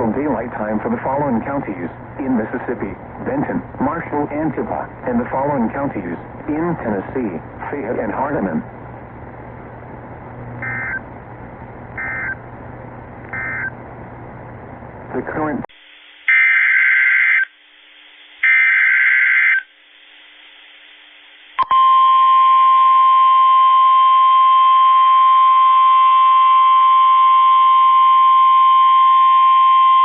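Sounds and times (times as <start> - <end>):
steady warning alarm tone: 10.6 - 11.0, 12.0 - 12.4, 13.4 - 13.7.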